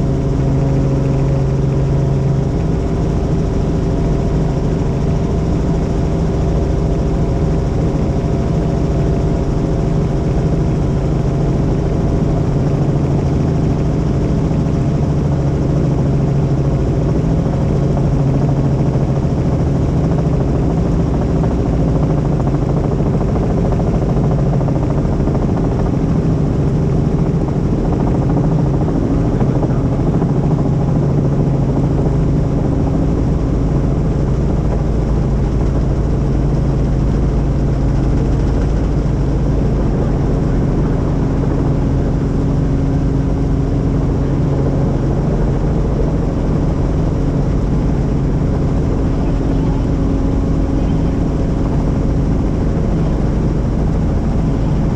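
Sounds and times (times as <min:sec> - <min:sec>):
constant low hum: 0:00.0 - 0:54.9
helicopter rotor and engine drone: 0:00.0 - 0:54.9.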